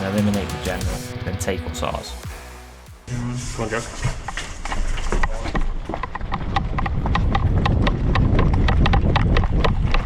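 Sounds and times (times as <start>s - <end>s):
running footfalls: 4.1s - 10.0s.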